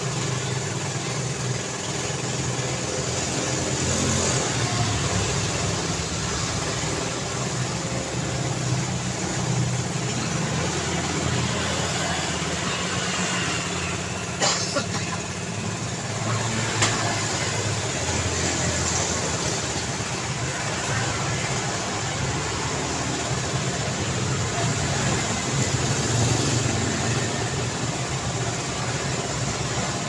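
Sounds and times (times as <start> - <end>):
road traffic drone: 0.0 - 30.0.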